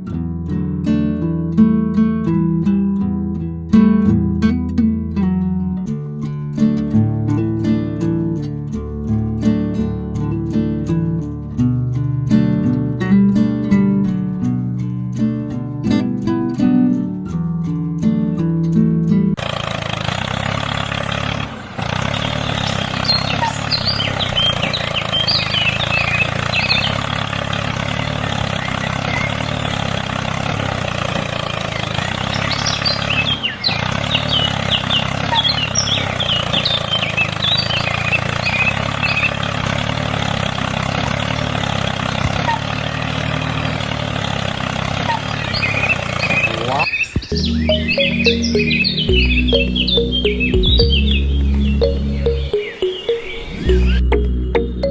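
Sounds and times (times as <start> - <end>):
small motor humming: 19.4 - 46.5
small birds chirping: 22.1 - 54.9.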